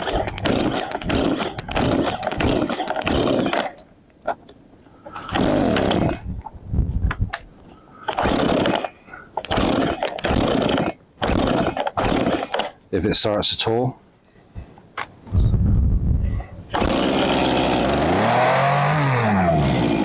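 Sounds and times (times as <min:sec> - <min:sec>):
chainsaw revving: 0:00.0 - 0:03.8, 0:05.2 - 0:06.2, 0:08.1 - 0:08.9, 0:09.5 - 0:12.7, 0:16.7 - 0:20.0.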